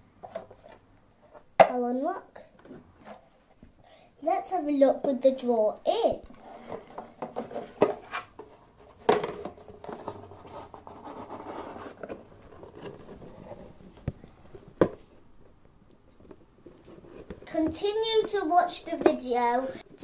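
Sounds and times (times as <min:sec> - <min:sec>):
scraping on wooden box: 0:06.4 - 0:13.8.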